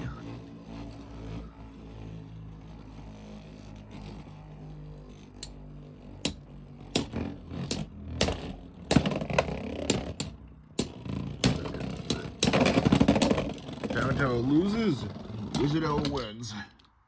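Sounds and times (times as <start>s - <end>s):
low spinning whir: 0.0s - 16.8s
plastic tops clacking together: 7.0s - 14.2s.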